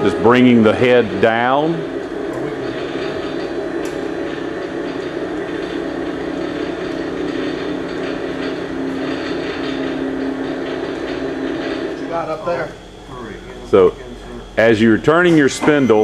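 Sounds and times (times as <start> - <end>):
boring mill machine hum: 0.0 - 16.0.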